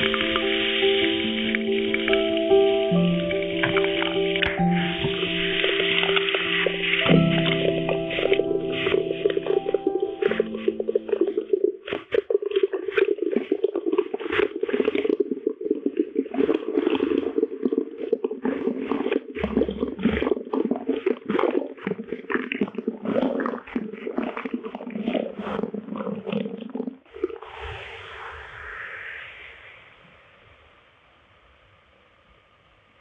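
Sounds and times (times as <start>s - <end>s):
slowed low crackling rumble: 0.0s - 33.0s.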